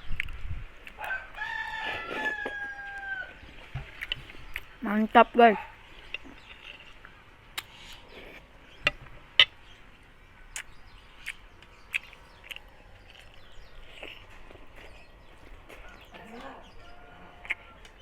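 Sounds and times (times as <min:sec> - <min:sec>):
wet chewing mouth clicks: 0:00.0 - 0:01.1, 0:03.8 - 0:04.8, 0:05.7 - 0:09.6, 0:10.5 - 0:16.2, 0:17.4 - 0:18.0.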